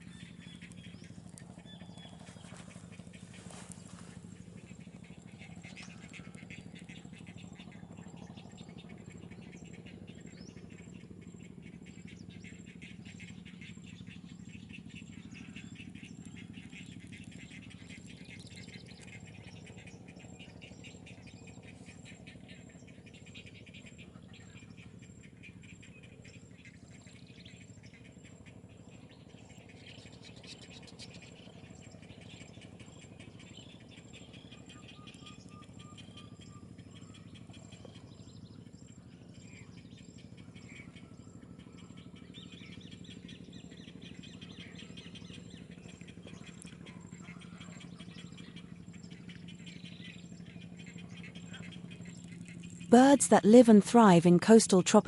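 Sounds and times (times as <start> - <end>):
chirps: 0.0 - 55.0
chorus of small calling animals: 0.0 - 55.0
steady low hum: 0.0 - 55.0.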